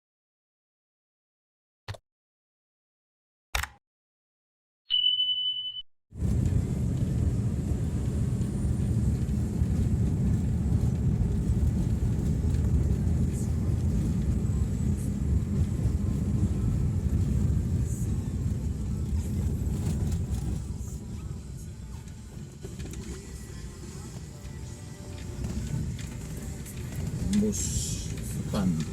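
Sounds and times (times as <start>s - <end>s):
high beep: 4.9s - 5.9s
moving vehicle rumble: 6.2s - 28.9s.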